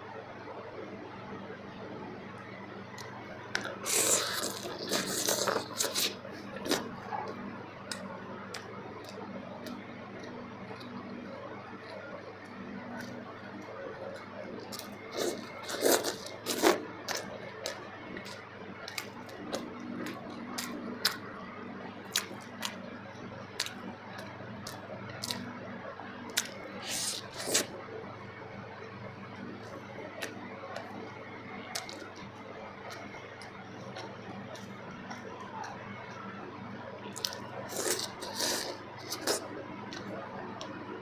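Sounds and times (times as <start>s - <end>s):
faint steady hum: 0.0s - 41.0s
wet chewing mouth sounds: 3.0s - 11.1s, 14.0s - 21.2s, 26.4s - 27.8s, 37.1s - 40.8s.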